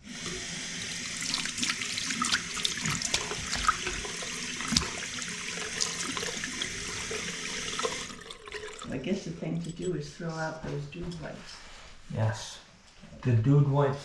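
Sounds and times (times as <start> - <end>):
water rushing down a drain: 0.0 - 9.0.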